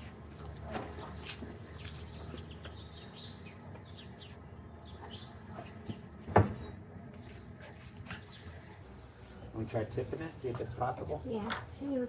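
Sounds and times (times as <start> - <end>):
small birds chirping: 1.7 - 6.1.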